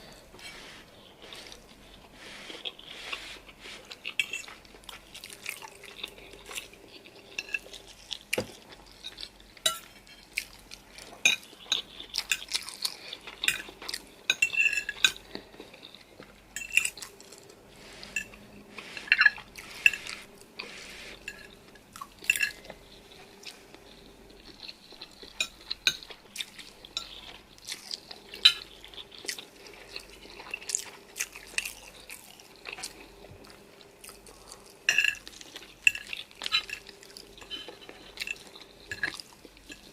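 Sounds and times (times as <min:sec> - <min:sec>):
cutlery clinking on dishes: 0:07.3 - 0:07.7, 0:08.4 - 0:10.3, 0:11.2 - 0:12.6, 0:13.3 - 0:15.3, 0:22.2 - 0:22.8, 0:34.9 - 0:36.8, 0:37.4 - 0:39.9.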